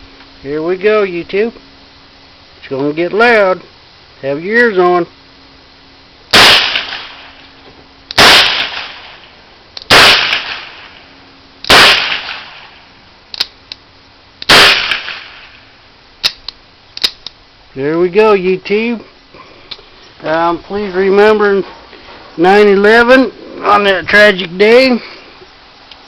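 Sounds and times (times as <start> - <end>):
handgun gunshots: 6.4 - 7.2, 8.2 - 9.0, 9.9 - 10.8, 11.7 - 12.6, 14.4 - 15.4.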